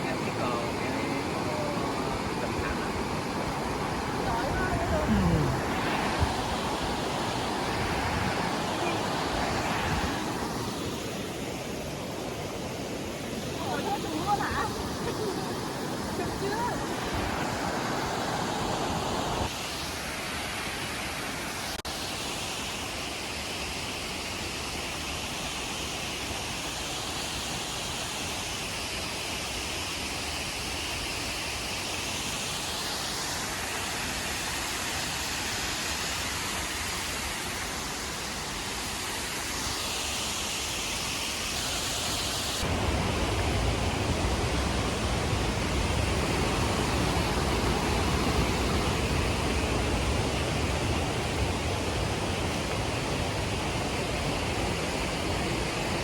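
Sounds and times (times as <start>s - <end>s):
rushing water: 0.0s - 56.0s.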